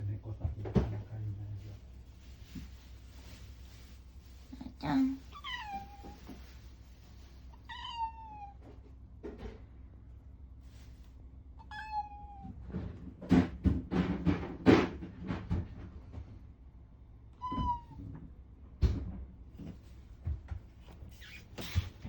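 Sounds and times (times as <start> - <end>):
cat meowing: 5.3 - 6.3, 7.5 - 8.6, 11.6 - 12.6, 17.4 - 18.0
loud knocks and scuffling: 12.6 - 16.3.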